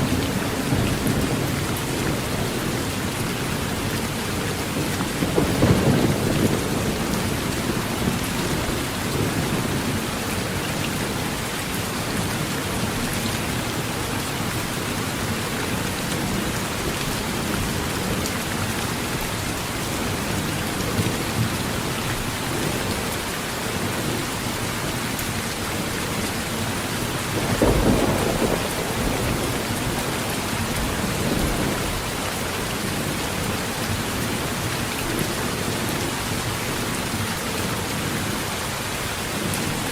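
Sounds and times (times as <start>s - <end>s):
heavy rain on a tin roof: 0.0s - 39.9s
thunder rumbling: 4.4s - 10.0s, 27.3s - 32.1s.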